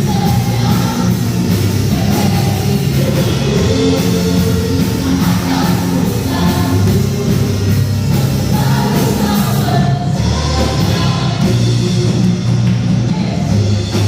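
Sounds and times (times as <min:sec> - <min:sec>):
band playing praise song: 0:00.0 - 0:14.0
group of voices singing: 0:00.0 - 0:14.0.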